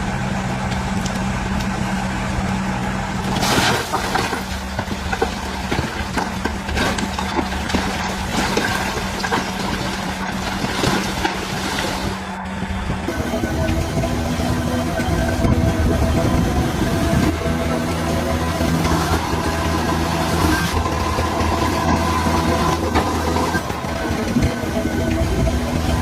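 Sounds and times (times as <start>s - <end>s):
bulldozer diesel engine running: 0.0s - 26.0s
metal clanks and rattles: 3.3s - 12.2s.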